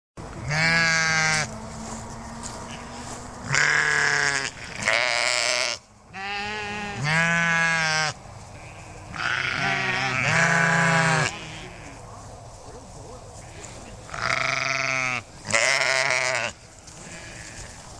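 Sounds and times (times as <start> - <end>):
sheep bleating: 0.4 - 1.6, 2.6 - 12.0, 14.1 - 17.8.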